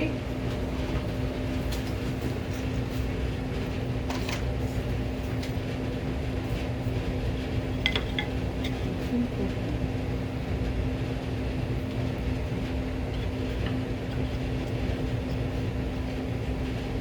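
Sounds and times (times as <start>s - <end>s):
steady machine hum: 0.0s - 17.0s.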